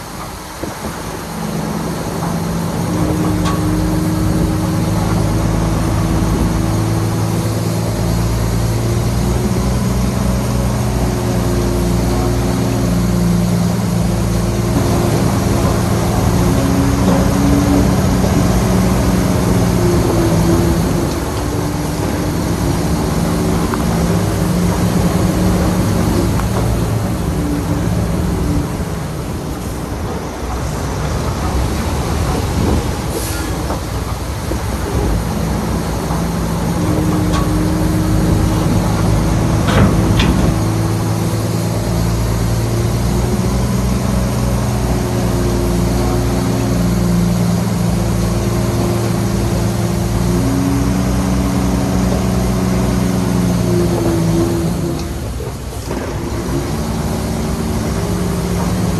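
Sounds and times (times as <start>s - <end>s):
bulldozer diesel engine: 0.0s - 58.9s
sharp metallic knocks: 35.2s - 43.9s.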